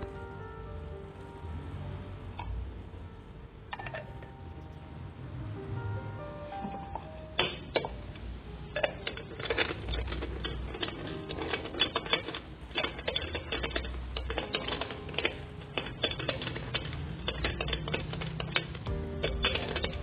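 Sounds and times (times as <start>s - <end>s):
faint music with held notes: 0.0s - 20.0s
rapid clicking and clattering: 6.6s - 20.0s.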